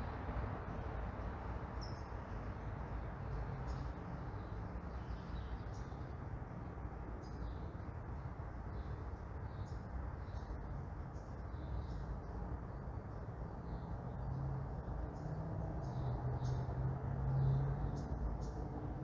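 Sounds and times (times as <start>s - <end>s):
distant traffic rumble: 0.0s - 19.0s
small birds chirping: 8.7s - 19.0s.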